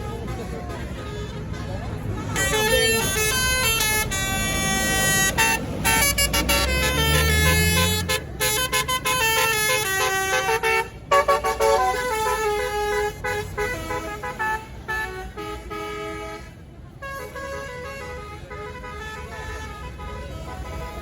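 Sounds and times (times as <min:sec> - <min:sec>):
bus musical horn tune: 0:00.0 - 0:21.0
diesel engine rumble: 0:00.0 - 0:21.0.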